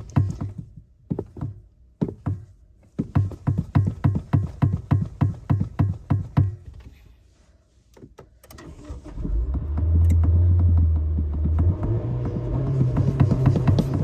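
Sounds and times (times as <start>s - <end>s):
car engine revving: 8.9s - 14.0s.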